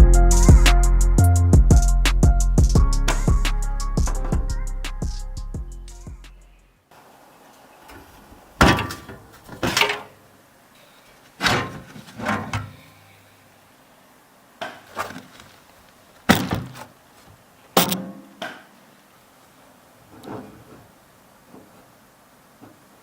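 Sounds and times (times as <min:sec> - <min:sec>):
computer parts knocking and clunking: 0:08.6 - 0:10.1, 0:16.3 - 0:16.9, 0:17.8 - 0:18.4.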